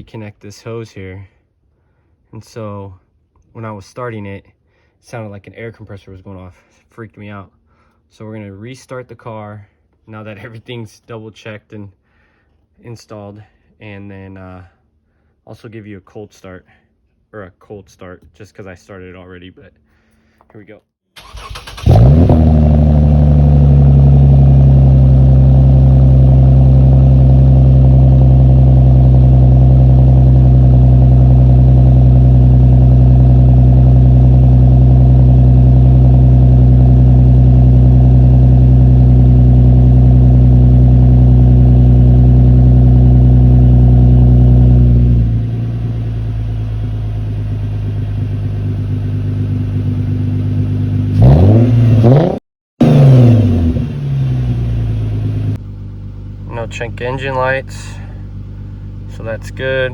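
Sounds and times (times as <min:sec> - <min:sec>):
car engine idling: 0:21.2 - 0:52.2, 0:52.8 - 0:59.9.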